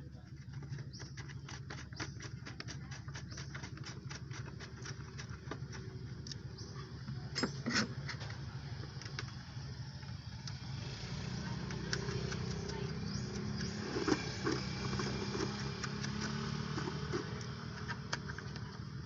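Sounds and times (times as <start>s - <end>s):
engine idling: 0.0s - 19.0s.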